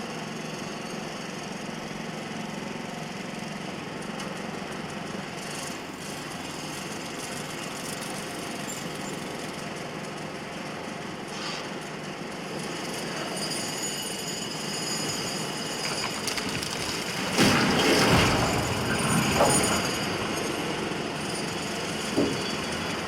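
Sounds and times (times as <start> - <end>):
debris falling: 15.8 - 20.8
wall crashing down: 16.4 - 20.3.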